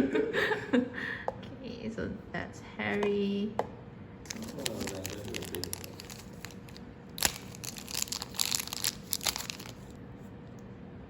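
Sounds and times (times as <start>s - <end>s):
packaging crinkling: 4.3s - 10.0s.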